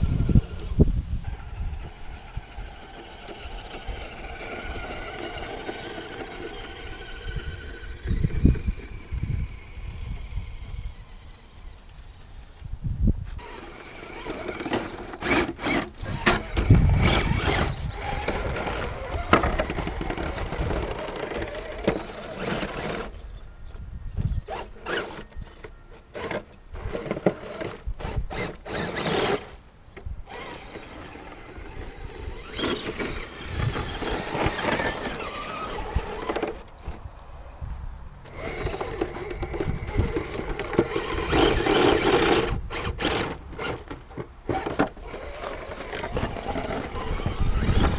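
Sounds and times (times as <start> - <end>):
electric motor and gears whining: 0.0 - 47.9
knocks and scrapes on ground: 13.2 - 37.0, 38.3 - 47.9.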